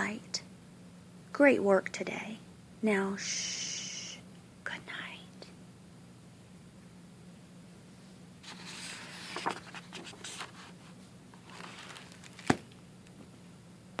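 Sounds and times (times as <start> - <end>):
low room hum: 0.0 - 14.0
rustling handling noises: 8.1 - 13.3.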